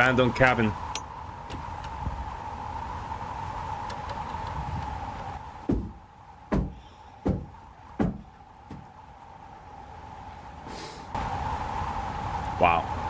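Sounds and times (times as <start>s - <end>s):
steady high hum: 0.0s - 11.2s
dull thumps: 5.4s - 9.0s
short hiss: 10.7s - 11.2s.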